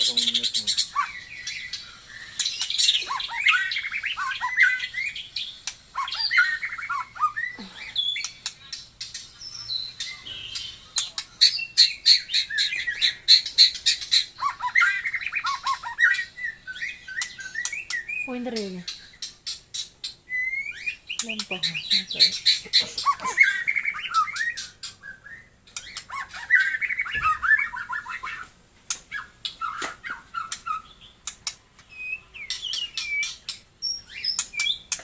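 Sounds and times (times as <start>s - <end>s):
songbird whistled notes: 0.0s - 8.5s, 9.3s - 18.3s, 20.3s - 28.5s, 31.9s - 35.0s
bird sharp clicking notes: 28.9s - 31.9s.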